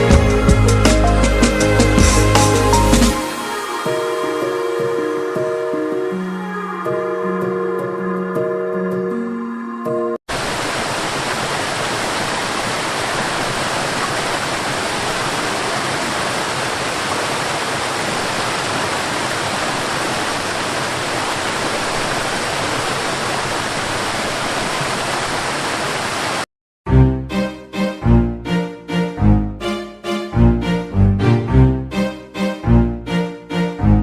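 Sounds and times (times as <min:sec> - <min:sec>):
waterfall rushing: 0:10.3 - 0:26.5.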